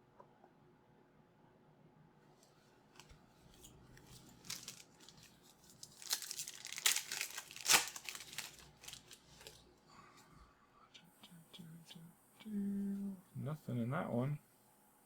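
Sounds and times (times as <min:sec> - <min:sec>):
foil wrapper tearing and crinkling: 0:04.0 - 0:09.6.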